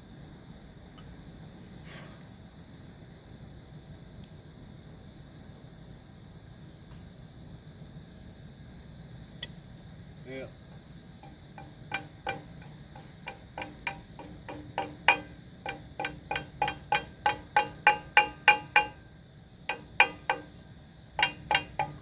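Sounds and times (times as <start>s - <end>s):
hammer tapping on steel: 11.2s - 19.1s, 19.7s - 20.6s, 21.2s - 22.0s.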